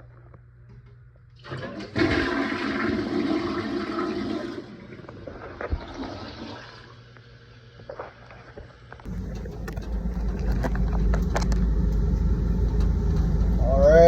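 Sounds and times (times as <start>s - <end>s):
toilet flushing: 1.4s - 5.1s, 5.7s - 7.0s.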